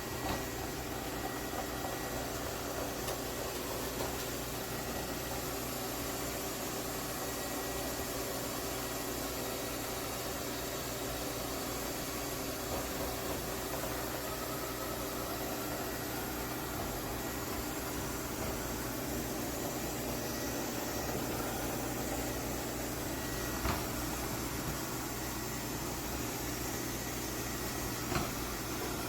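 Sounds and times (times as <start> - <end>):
robot vacuum whirring: 12.4 - 29.0.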